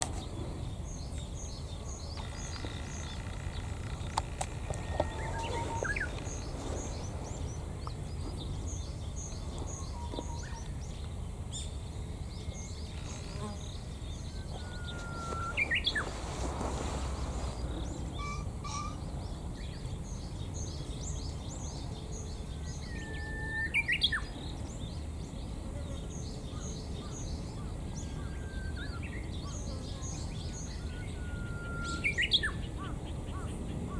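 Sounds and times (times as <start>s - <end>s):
small birds chirping: 0.1s - 22.9s
pheasant crowing: 2.2s - 7.2s, 14.2s - 19.1s
wings drumming: 2.2s - 7.6s, 14.5s - 19.0s.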